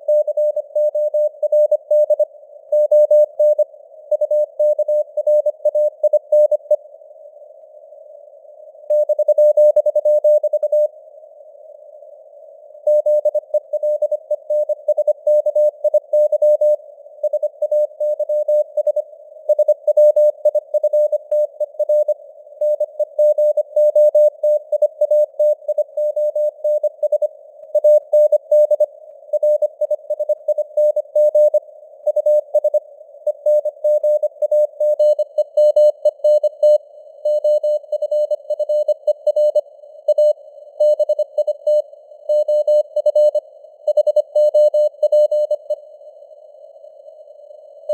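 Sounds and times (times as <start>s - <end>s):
faint radio hiss: 2.2s - 6.0s, 6.7s - 8.9s, 10.8s - 14.9s.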